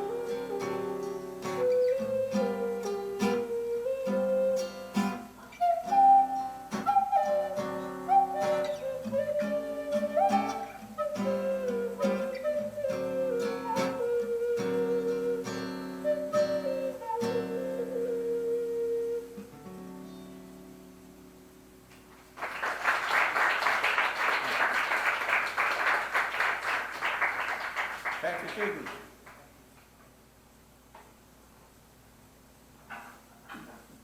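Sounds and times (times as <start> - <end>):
flute melody: 0.0 - 20.3
audience applause: 22.2 - 29.4.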